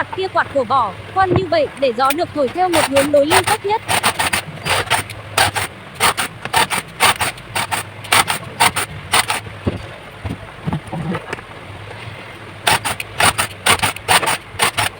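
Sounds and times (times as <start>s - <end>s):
hand tool scraping plastic box: 2.1s - 9.5s, 12.7s - 14.9s.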